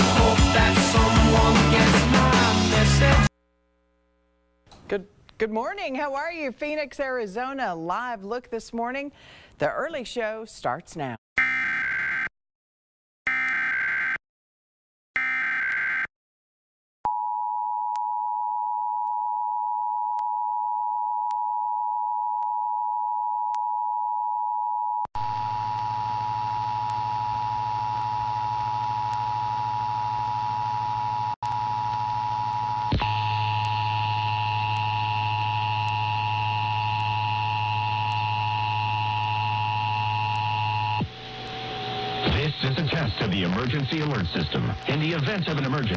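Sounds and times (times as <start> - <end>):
two-tone alarm: 11.4 - 12.3, 13.3 - 14.2, 15.2 - 16.1, 25.9 - 41.2.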